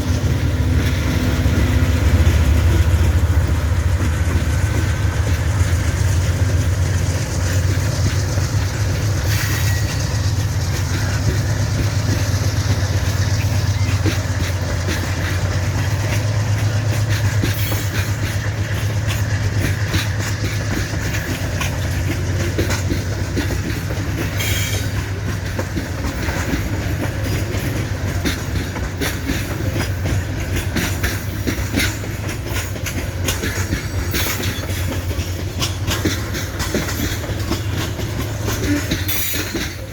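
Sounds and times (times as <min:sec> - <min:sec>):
diesel locomotive drone: 0:00.0 - 0:39.9
wheels clacking over rail joints: 0:00.0 - 0:39.9
wheel squeals: 0:07.1 - 0:21.8, 0:22.6 - 0:30.1, 0:33.3 - 0:39.9.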